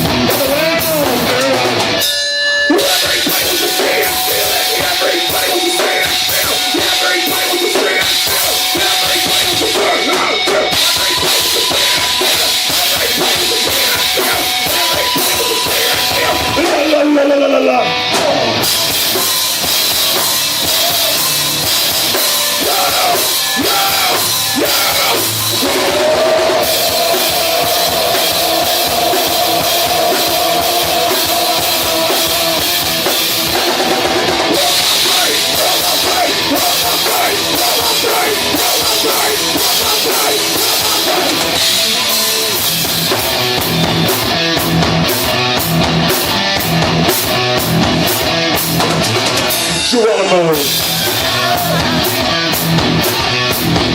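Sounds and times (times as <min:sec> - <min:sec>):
live rock band playing: 0:00.0 - 0:53.9.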